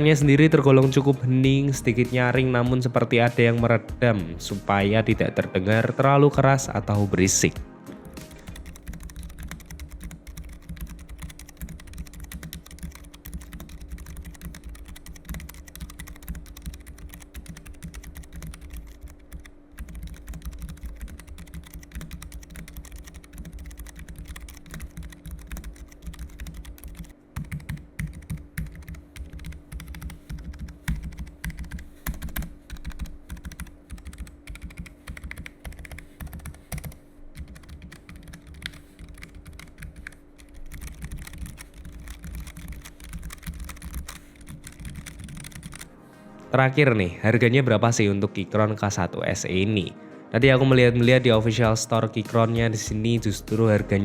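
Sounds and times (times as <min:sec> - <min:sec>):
typing on mechanical keyboard: 0:08.1 - 0:45.9.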